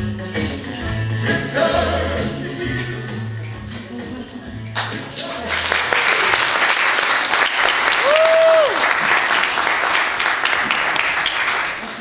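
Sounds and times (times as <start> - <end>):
audience applauding: 4.8 - 12.0
high whoop: 7.9 - 9.0.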